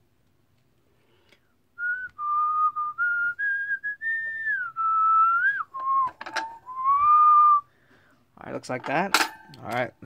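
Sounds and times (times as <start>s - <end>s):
person whistling a tune: 1.8s - 7.7s.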